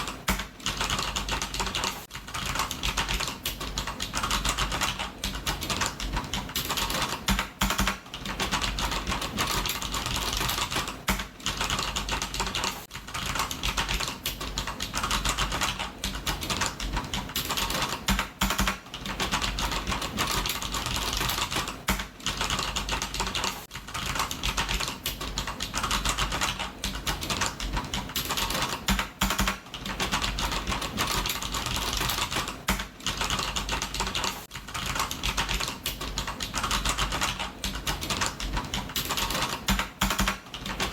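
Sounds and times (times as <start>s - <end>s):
fast typing on keyboard: 0.0s - 40.9s.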